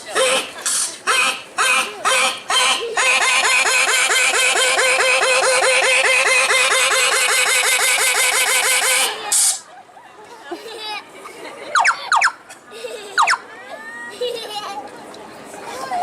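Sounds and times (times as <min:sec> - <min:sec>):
comic sneeze: 0:00.2 - 0:01.0.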